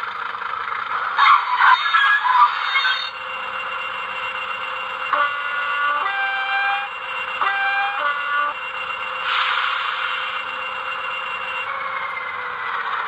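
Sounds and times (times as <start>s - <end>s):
synthesised engine sound: 0.0s - 13.0s
two-tone diesel horn: 5.1s - 8.8s.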